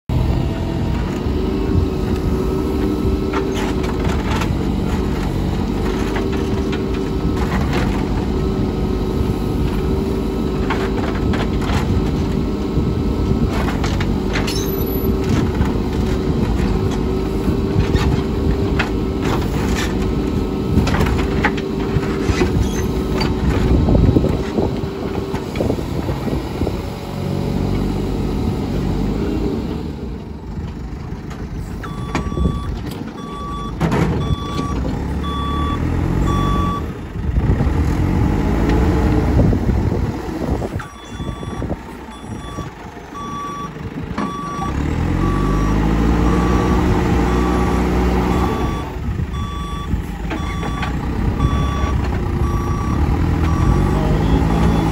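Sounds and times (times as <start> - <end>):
diesel engine running: 0.1 - 54.9
reversing alarm beeps: 31.9 - 36.9, 40.8 - 47.7, 48.3 - 54.9.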